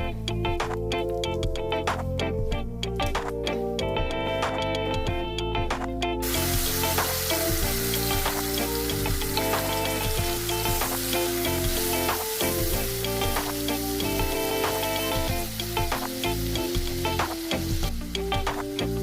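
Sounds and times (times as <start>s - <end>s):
background music: 0.0s - 19.0s
food sizzling in oil: 6.2s - 19.0s.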